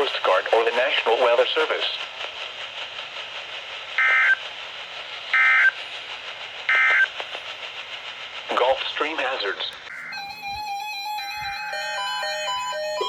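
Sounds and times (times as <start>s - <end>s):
radio static hiss: 0.0s - 2.5s, 3.9s - 4.5s, 5.3s - 7.4s, 8.4s - 10.6s
warbling digital data tones: 9.9s - 13.0s.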